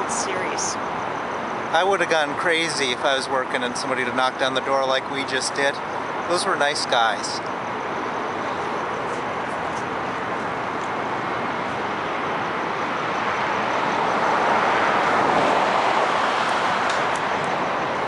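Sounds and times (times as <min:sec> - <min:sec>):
traffic noise: 0:00.0 - 0:18.0
vehicle passing: 0:08.4 - 0:18.0.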